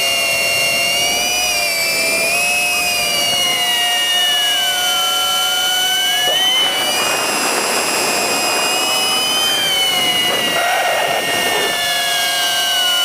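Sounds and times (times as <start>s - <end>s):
drone motors whining: 0.0s - 13.0s
rough rushing noise: 5.5s - 12.8s.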